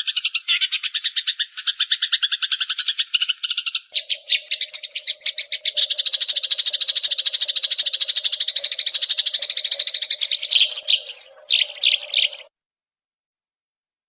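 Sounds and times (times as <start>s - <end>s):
songbird chattering trill: 0.0s - 12.5s.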